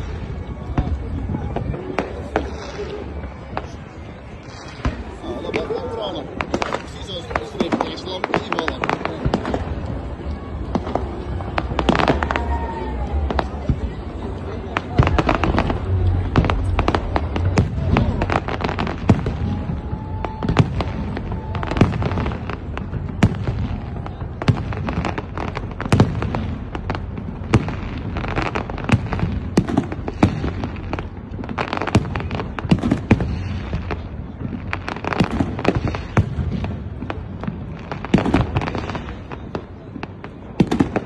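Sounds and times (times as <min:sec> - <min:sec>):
fireworks bangs and crackles: 0:00.0 - 0:41.0
low rumble: 0:13.0 - 0:24.4.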